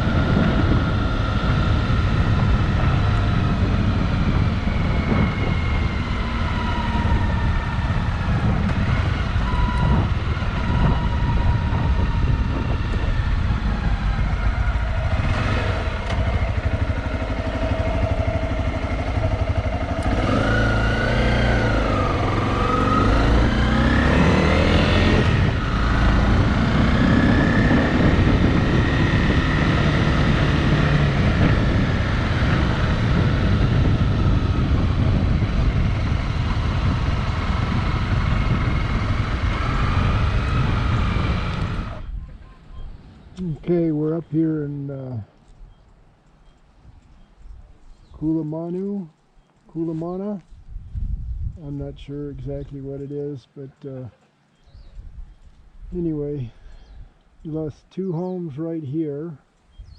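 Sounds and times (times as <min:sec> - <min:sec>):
motorcycle engine running: 0:00.0 - 0:43.9
wind and road noise: 0:00.0 - 0:59.9.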